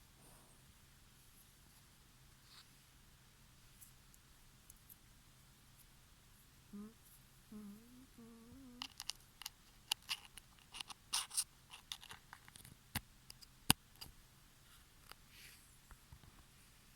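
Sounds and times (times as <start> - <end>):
person snoring: 6.7 - 8.8
small sharp clicks and crackles: 8.8 - 14.2.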